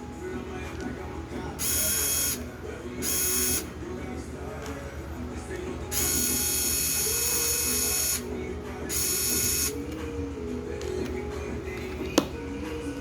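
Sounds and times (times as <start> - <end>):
small electric motor whining: 1.6 - 3.7, 5.9 - 9.9.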